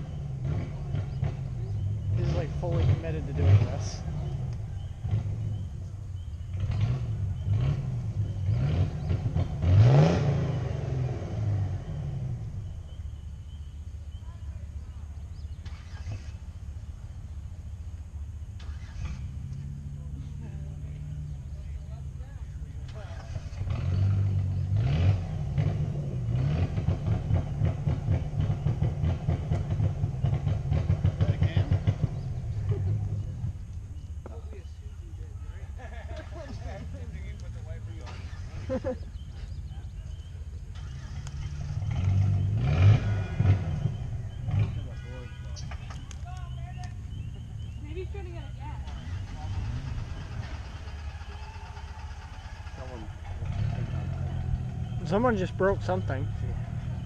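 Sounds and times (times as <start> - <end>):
car engine revving hard: 0.0 - 5.6, 6.5 - 12.7, 18.6 - 20.1, 22.9 - 33.6, 40.2 - 45.8, 48.8 - 57.0.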